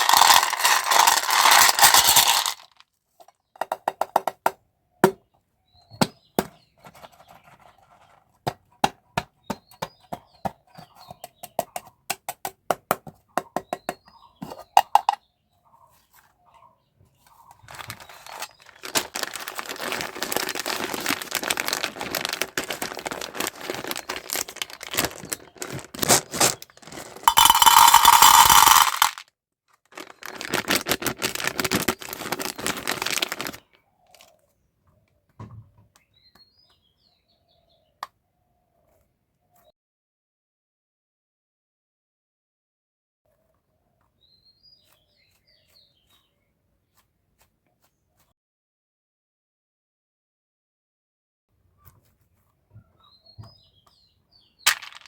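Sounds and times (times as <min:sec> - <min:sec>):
wrappers crinkling: 0:00.0 - 0:02.8, 0:17.6 - 0:29.2, 0:29.8 - 0:33.7.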